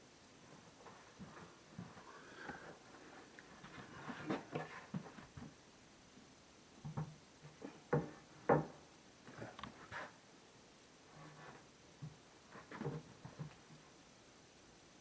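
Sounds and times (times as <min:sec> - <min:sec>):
cabinet parts knocking: 0:07.9 - 0:08.8.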